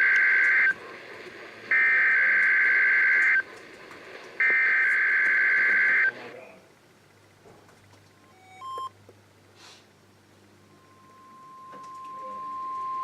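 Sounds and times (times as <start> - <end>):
two-tone warbling data bursts: 10.7 - 13.0.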